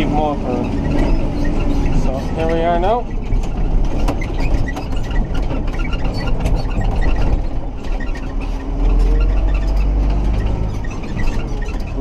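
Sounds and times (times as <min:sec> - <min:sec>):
tractor engine rumble: 0:00.0 - 0:12.0
clicking and rattling: 0:00.1 - 0:12.0.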